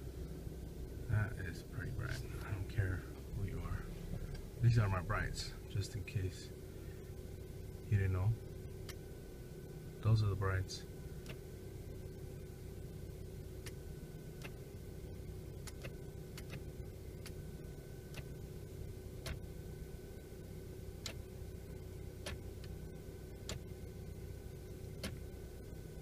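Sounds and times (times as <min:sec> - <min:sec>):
car engine idling: 0:00.0 - 0:26.0
light regular ticking: 0:08.6 - 0:09.1, 0:11.0 - 0:12.5, 0:13.6 - 0:14.8, 0:15.5 - 0:18.5, 0:19.1 - 0:19.6, 0:20.9 - 0:26.0.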